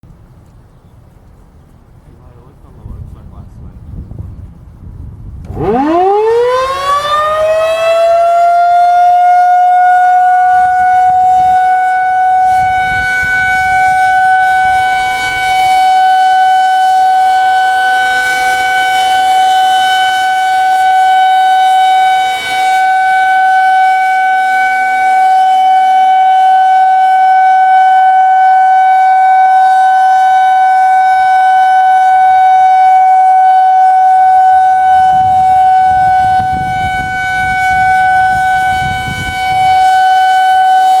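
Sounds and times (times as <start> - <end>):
outdoor warning siren steady tone: 5.4 - 41.0.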